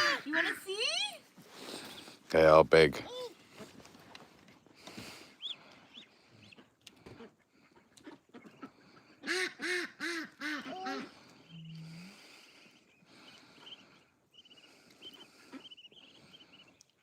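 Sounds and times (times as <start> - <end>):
faint high peeping: 5.3 - 6.7, 10.7 - 17.0
duck quacking: 5.4 - 12.4, 14.4 - 16.6.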